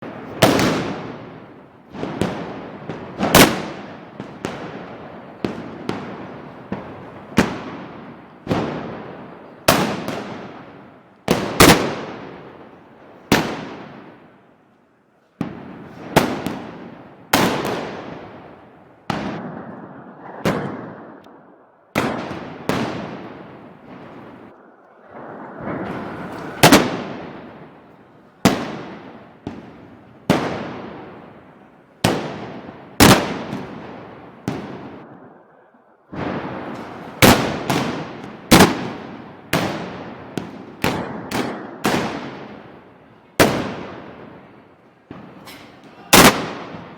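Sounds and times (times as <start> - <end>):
gunpowder bangs with echo: 15.4 - 35.5, 36.1 - 42.8, 45.1 - 46.9.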